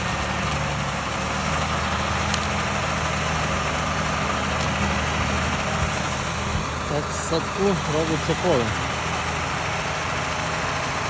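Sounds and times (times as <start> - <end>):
farm machinery engine running: 0.0 - 11.0.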